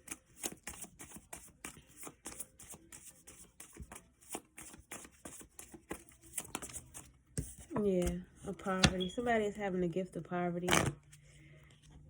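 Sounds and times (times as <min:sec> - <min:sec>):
cards being shuffled: 0:00.0 - 0:09.0.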